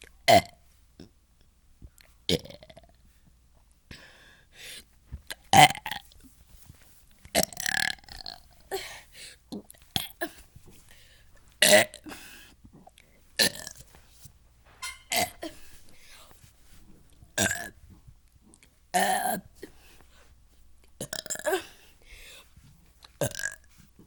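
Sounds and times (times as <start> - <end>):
person burping: 0.3 - 0.6, 2.3 - 2.9, 7.4 - 8.8, 9.5 - 10.4, 11.6 - 13.9, 14.8 - 15.8, 17.4 - 17.8, 19.0 - 19.7, 21.0 - 21.9, 23.2 - 23.7
breathy sounds: 8.1 - 24.0.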